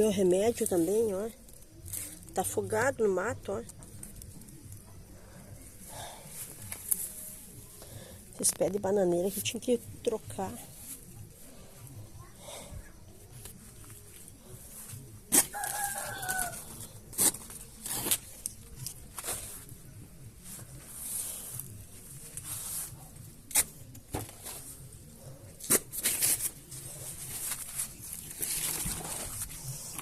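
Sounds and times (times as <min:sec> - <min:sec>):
sharp snaps and rustles: 0:13.4 - 0:19.8, 0:21.6 - 0:24.8, 0:25.6 - 0:30.0.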